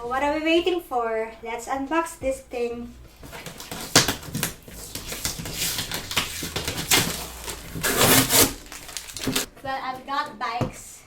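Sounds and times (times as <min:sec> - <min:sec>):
cardboard box rustling and scraping: 0:03.2 - 0:09.5.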